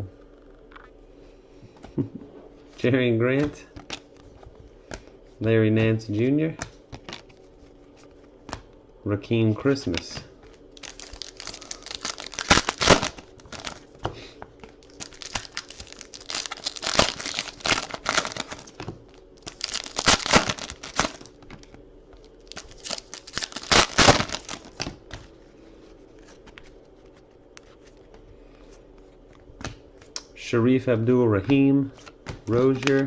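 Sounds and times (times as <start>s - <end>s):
cards being handled: 2.8s - 5.2s, 6.1s - 8.8s, 9.7s - 30.3s, 31.0s - 33.0s
card pack wrappers tearing: 10.1s - 13.9s, 14.6s - 25.2s, 31.9s - 33.0s.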